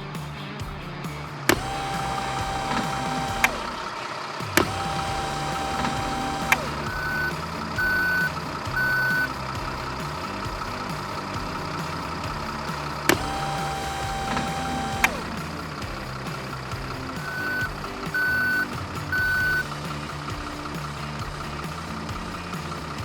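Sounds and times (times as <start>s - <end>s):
toy click: 4.6s - 10.0s, 17.1s - 19.7s
toy whirring tone: 4.6s - 19.8s
reversing beeps: 6.0s - 9.4s, 17.2s - 19.7s.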